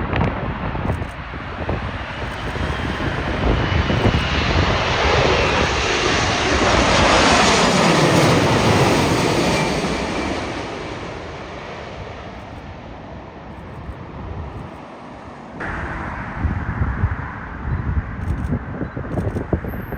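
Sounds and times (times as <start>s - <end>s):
wind buffeting microphone: 0.0s - 11.1s, 13.6s - 14.8s, 15.6s - 19.9s
jet airliner engine roar: 0.0s - 19.9s.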